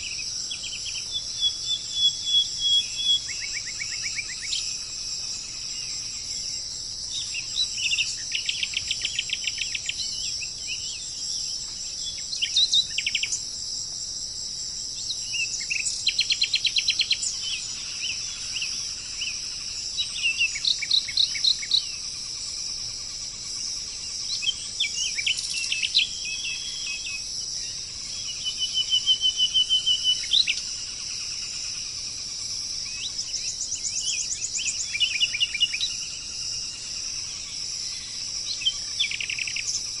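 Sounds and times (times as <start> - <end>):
birds calling: 0.0 - 6.4, 15.0 - 31.7
insects droning: 0.0 - 40.0.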